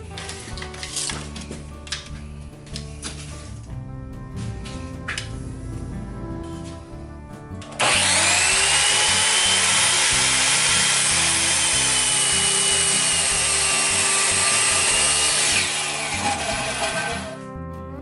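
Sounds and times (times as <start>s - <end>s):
power tool cutting wood: 7.6s - 17.4s.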